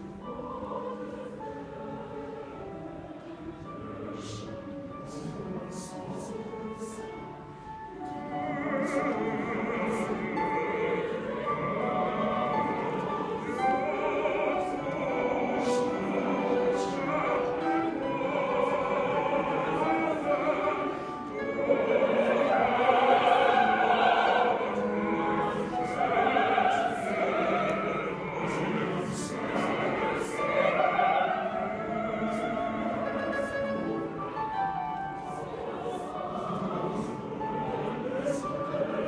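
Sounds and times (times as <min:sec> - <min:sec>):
choir singing: 0:00.0 - 0:39.0.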